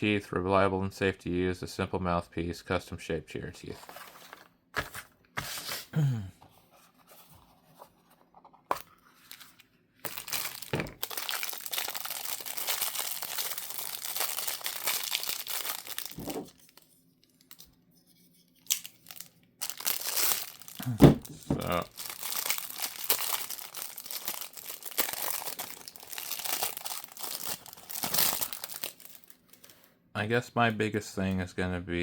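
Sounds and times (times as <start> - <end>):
packaging crinkling and rustling: 8.8 - 17.8, 18.6 - 29.9.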